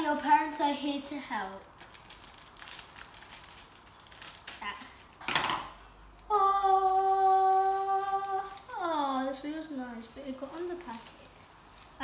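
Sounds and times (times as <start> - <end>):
girl humming: 6.3 - 8.8.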